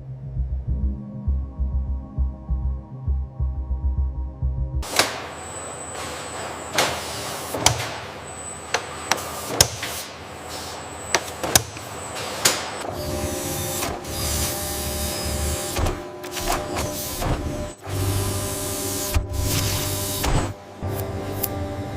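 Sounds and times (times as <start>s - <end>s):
low hum: 0.0s - 6.7s
factory machinery clattering: 4.8s - 18.0s
machine whirring: 4.8s - 21.9s.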